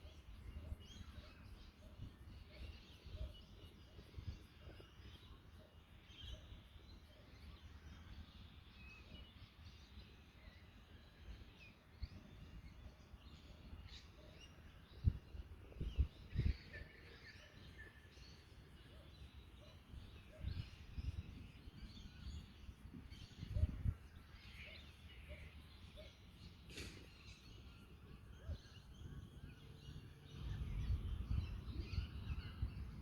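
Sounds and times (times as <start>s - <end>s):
small birds chirping: 0.0s - 33.0s
wind buffeting microphone: 14.8s - 16.9s, 19.9s - 24.4s, 28.3s - 33.0s.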